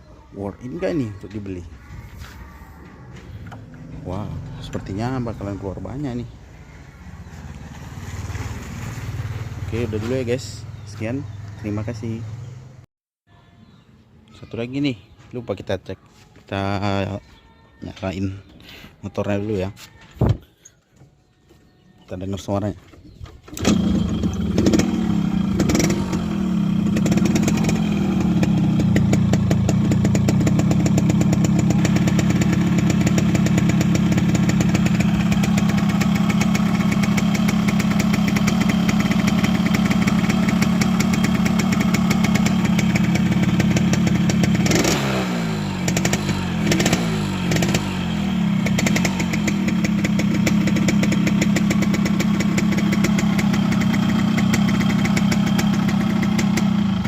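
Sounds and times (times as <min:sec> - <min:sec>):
engine throttle revs: 0:23.6 - 0:57.0
two-stroke motorcycle engine idling: 0:23.6 - 0:57.0.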